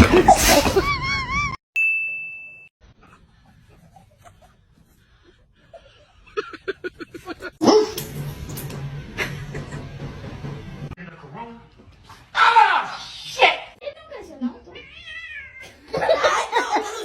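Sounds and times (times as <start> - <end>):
bell-like ding: 1.8 - 2.7.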